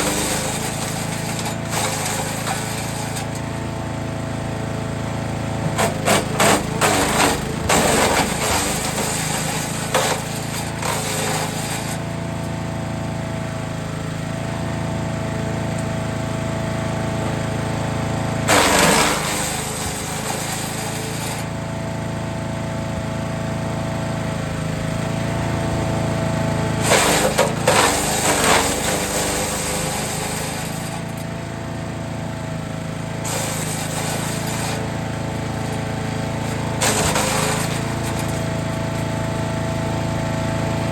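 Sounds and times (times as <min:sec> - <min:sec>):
wood chipper engine running: 0:00.0 - 0:40.9
wood crackling and crunching: 0:18.5 - 0:21.2, 0:33.2 - 0:34.8, 0:36.4 - 0:39.0.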